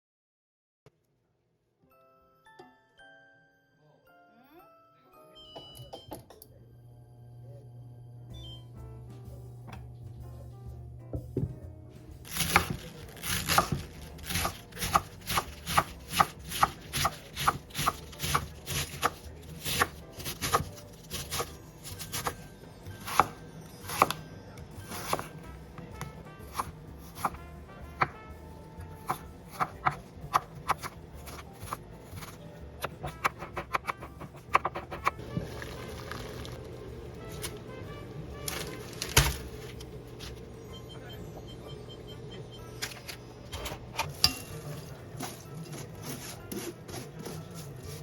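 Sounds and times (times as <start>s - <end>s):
knife chopping on cutting board: 12.3s - 22.4s, 23.1s - 24.2s, 24.9s - 25.3s, 25.9s - 28.2s, 28.8s - 35.5s.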